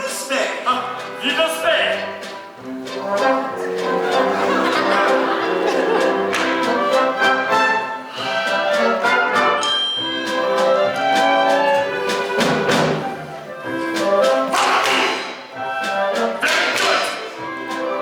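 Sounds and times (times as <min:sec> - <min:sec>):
brass-led orchestral dance music: 0:00.1 - 0:09.7, 0:10.4 - 0:18.0
sharp percussive hits: 0:14.5 - 0:15.5, 0:16.4 - 0:17.3.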